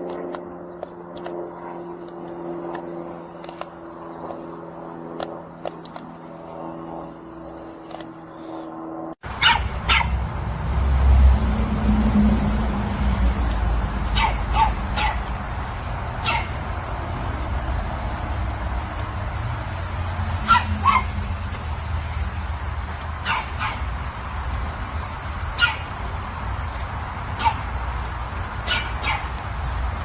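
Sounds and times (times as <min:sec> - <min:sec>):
steady droning tone: 0:00.0 - 0:28.6
loud low rumble: 0:09.2 - 0:22.8
dog barking: 0:09.3 - 0:10.2, 0:14.0 - 0:15.3, 0:16.2 - 0:16.7, 0:20.4 - 0:21.3, 0:23.2 - 0:23.9, 0:25.5 - 0:26.0, 0:27.4 - 0:27.7, 0:28.6 - 0:29.4.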